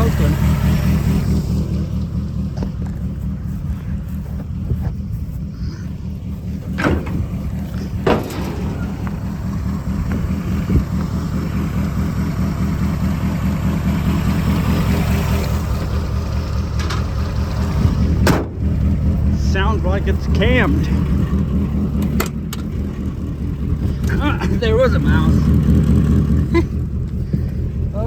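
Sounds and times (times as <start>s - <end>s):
choppy engine idling: 0.0s - 28.0s
sharp knocks: 6.7s - 11.0s.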